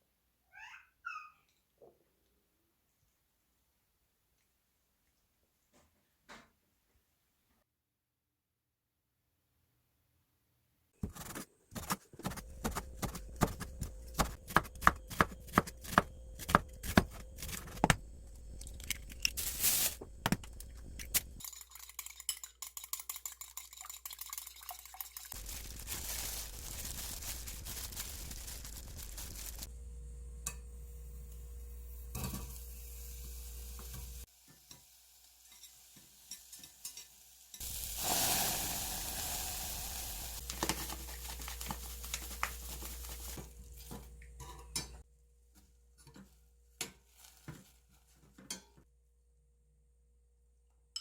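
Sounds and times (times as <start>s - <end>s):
food sizzling in a pan: 25.3s - 29.7s, 30.6s - 43.5s.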